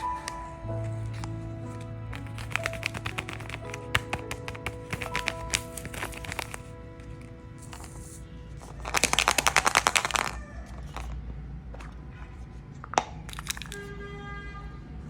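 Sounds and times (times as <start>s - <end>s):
background music: 0.0s - 13.6s
rapid crackling: 2.0s - 11.1s.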